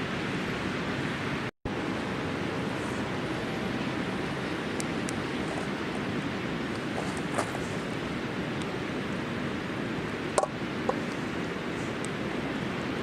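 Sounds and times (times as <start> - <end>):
steady rushing noise: 0.0 - 13.0
campfire crackles: 4.3 - 13.0.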